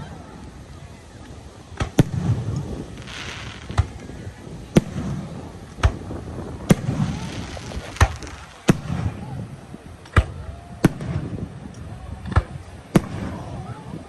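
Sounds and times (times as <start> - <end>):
crackling hiss: 0.0 - 14.0
fireworks bangs: 1.7 - 11.5, 12.4 - 13.7.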